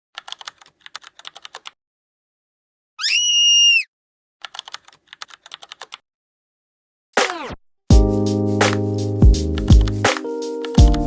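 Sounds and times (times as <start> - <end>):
computer keyboard typing: 0.2 - 1.8, 4.4 - 6.0.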